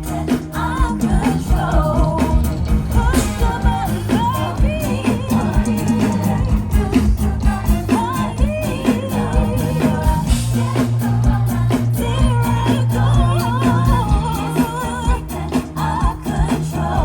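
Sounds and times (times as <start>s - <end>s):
bass line: 0.0s - 17.0s
live pop music: 0.0s - 17.0s
person singing: 0.0s - 17.0s.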